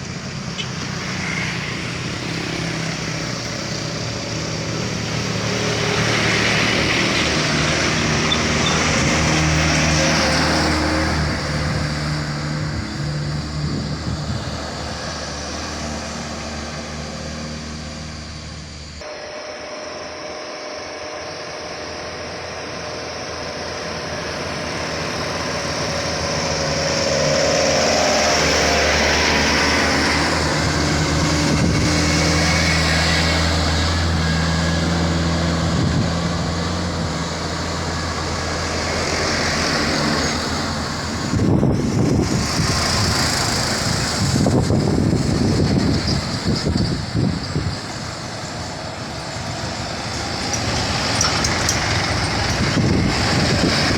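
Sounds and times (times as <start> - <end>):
heavy diesel engines under load: 0.0 - 53.9.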